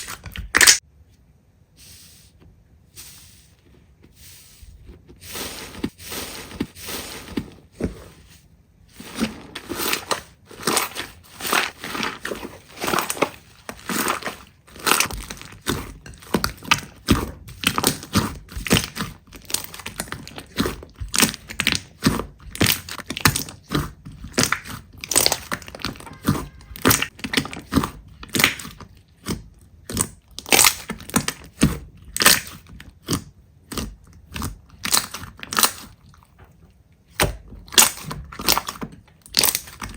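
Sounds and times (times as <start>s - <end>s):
slime popping and crackling: 0.0s - 0.8s, 9.7s - 36.0s, 37.2s - 39.9s.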